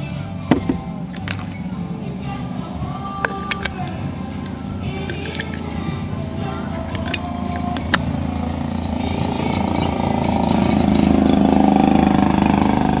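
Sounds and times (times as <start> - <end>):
vehicle engine approaching: 0.0 - 13.0
sharp clicks: 3.2 - 5.8, 6.8 - 8.1.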